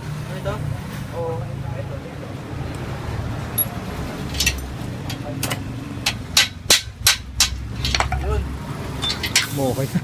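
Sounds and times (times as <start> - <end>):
road traffic rumble: 0.0 - 10.0
knocks and clicks of bicycle repair: 3.5 - 9.8.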